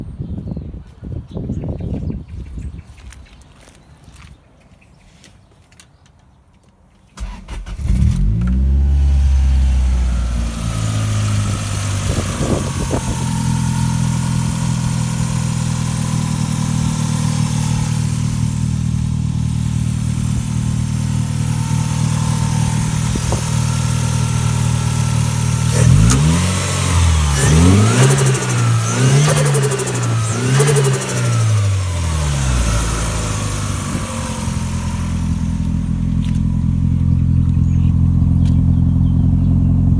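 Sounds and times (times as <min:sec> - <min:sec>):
car engine starting and idling: 0:07.2 - 0:39.9
engine revs blipped: 0:07.2 - 0:39.9
turbo fluttering: 0:09.1 - 0:37.6.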